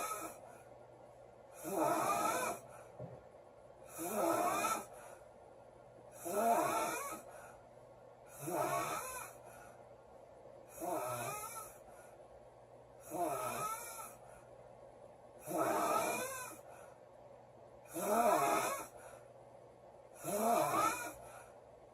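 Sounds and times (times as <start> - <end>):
woman snoring loudly: 0.0 - 0.4, 1.6 - 2.7, 3.9 - 4.9, 6.2 - 7.3, 8.4 - 9.4, 10.8 - 11.8, 13.0 - 14.2, 15.4 - 16.7, 17.9 - 19.0, 20.2 - 21.2.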